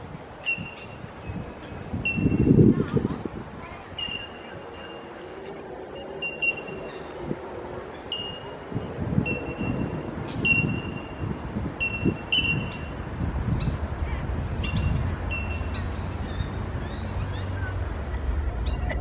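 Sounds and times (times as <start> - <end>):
bird ringing tink calls: 8.0 - 8.5, 13.5 - 17.5
low rumble: 16.6 - 19.0.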